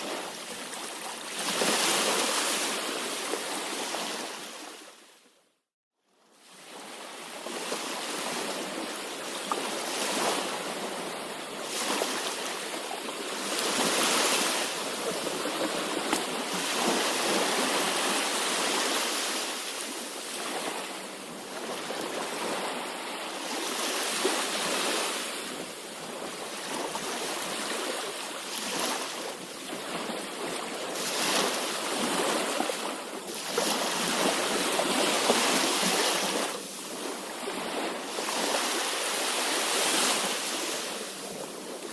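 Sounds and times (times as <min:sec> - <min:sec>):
sea waves breaking: 0:00.0 - 0:05.0, 0:06.5 - 0:41.9.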